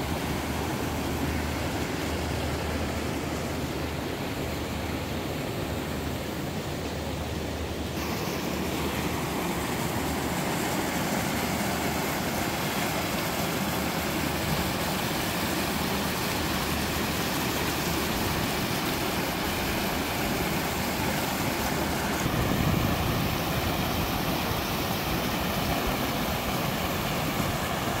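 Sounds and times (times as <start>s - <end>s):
mountain stream and waterfall rushing: 0.0s - 28.0s.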